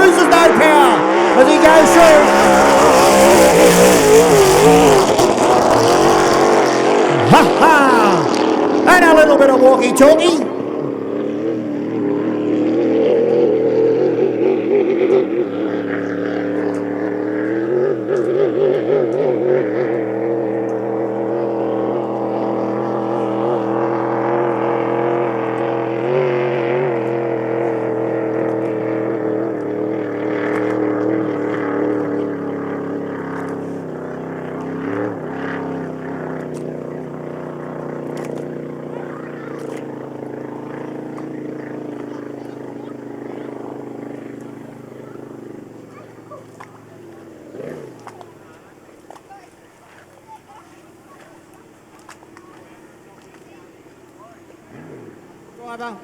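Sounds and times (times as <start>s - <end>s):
racing boat engine at speed: 0.0s - 56.0s.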